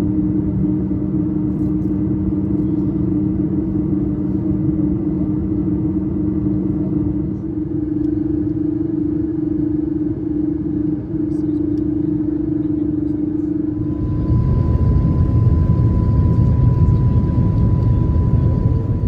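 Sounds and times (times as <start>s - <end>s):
droning hum: 0.0s - 19.0s
lower hum tone: 0.0s - 19.0s
vehicle rumble from inside: 13.9s - 19.0s.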